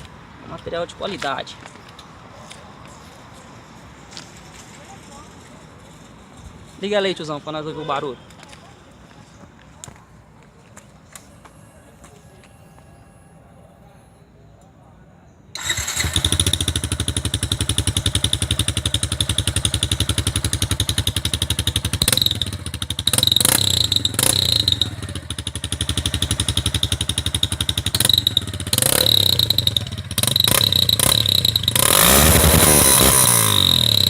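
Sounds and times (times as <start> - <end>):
motorcycle engine idling and revving: 15.6 - 34.0.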